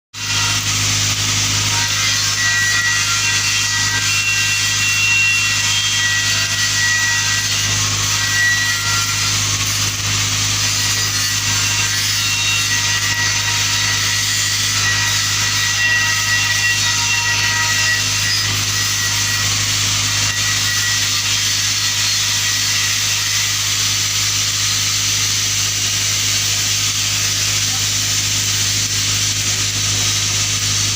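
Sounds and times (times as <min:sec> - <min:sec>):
welding arc hiss: 0:17.7 - 0:30.9
welding machine low hum: 0:18.1 - 0:30.9.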